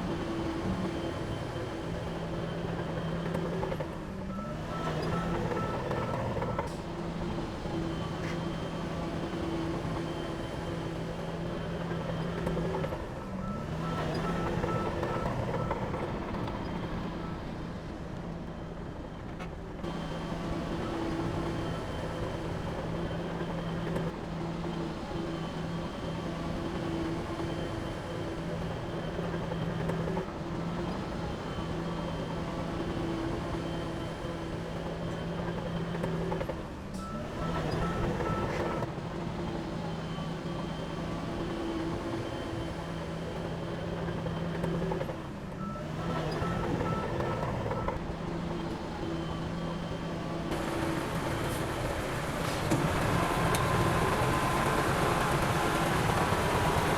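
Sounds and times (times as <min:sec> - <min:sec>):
diesel machinery engine running: 0:19.8 - 0:56.9
reversing alarm beeping: 0:37.0 - 0:38.9, 0:45.6 - 0:56.9.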